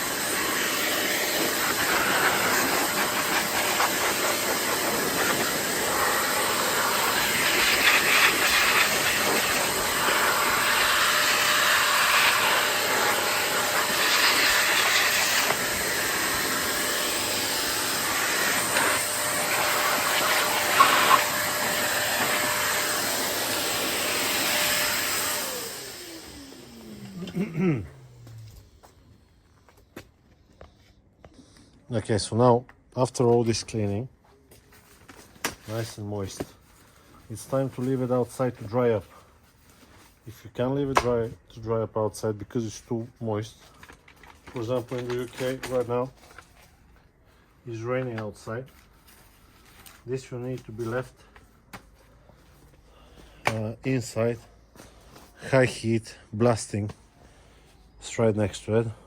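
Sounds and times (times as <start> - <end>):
vacuum motor winding down: 0.0 - 28.9
vacuum cleaner suction: 0.0 - 29.0.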